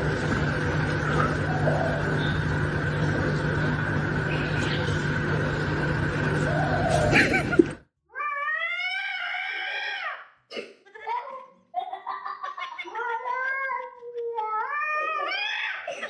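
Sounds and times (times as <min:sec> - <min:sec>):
cat yowling: 0:08.1 - 0:10.3.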